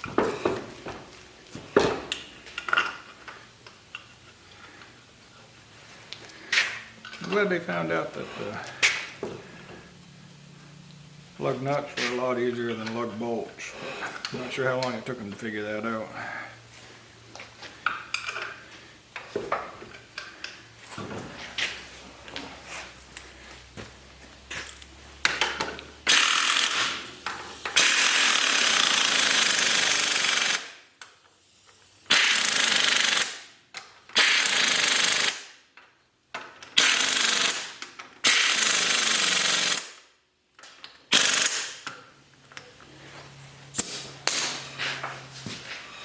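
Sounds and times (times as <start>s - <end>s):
impact wrench bursts: 25.2s - 35.6s, 36.7s - 40.0s, 41.1s - 42.0s.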